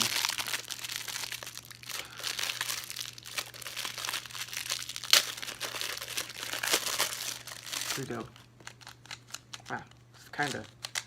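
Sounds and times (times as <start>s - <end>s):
plastic packaging rustling: 0.0s - 11.0s.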